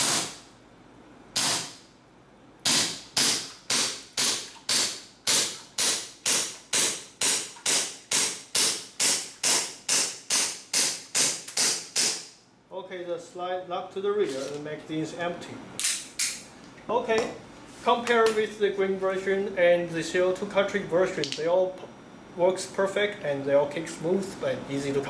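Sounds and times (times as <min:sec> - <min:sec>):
airsoft pistol shots: 0:00.0 - 0:00.5, 0:01.4 - 0:01.8, 0:02.6 - 0:12.3.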